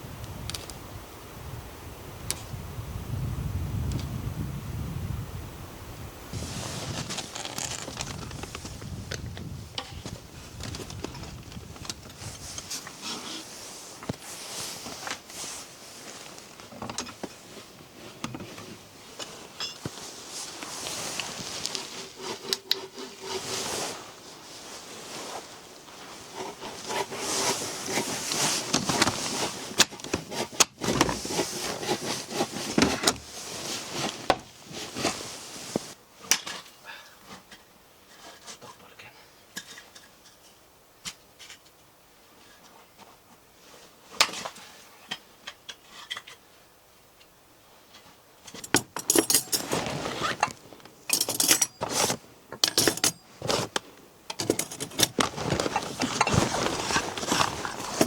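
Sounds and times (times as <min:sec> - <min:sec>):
metal gear clinking and rattling: 0:48.6 - 0:49.9, 0:51.1 - 0:53.2, 0:54.4 - 0:56.4.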